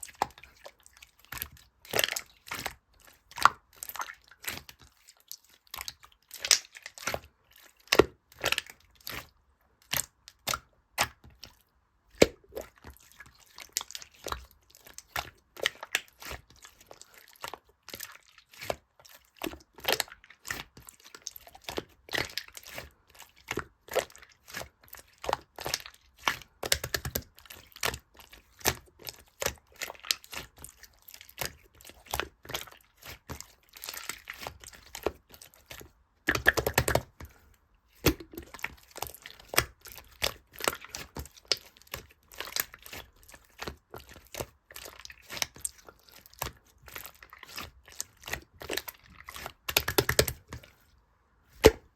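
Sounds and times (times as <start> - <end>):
slime crackling and popping: 38.0 - 50.5.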